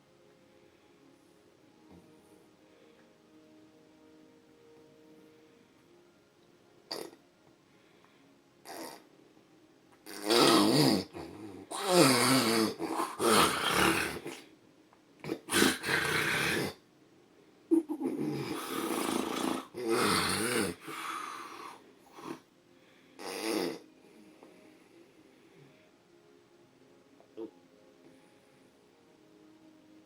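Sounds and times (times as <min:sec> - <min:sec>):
snorts: 0:06.9 - 0:07.2, 0:08.6 - 0:09.1, 0:10.0 - 0:14.5, 0:15.2 - 0:16.8, 0:17.7 - 0:22.4, 0:23.2 - 0:23.9
man snoring heavily: 0:10.1 - 0:14.4, 0:15.3 - 0:16.8, 0:18.2 - 0:22.4.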